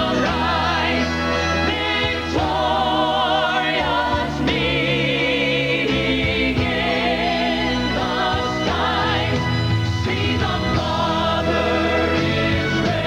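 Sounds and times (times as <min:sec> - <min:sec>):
gospel music with held notes: 0:00.0 - 0:13.0.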